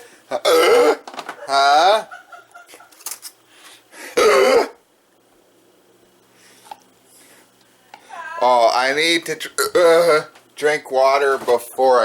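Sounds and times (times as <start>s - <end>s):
man hiccuping: 0.3s - 2.1s, 4.2s - 4.8s, 9.6s - 10.3s.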